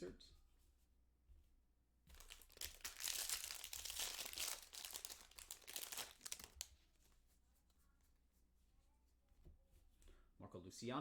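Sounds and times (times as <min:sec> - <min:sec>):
card pack wrapper tearing and crinkling: 0:02.1 - 0:06.7.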